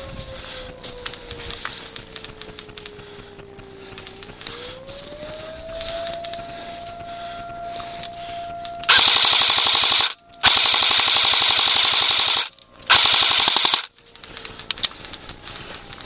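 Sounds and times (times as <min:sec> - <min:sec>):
airsoft gun automatic bursts: 0:08.9 - 0:13.9.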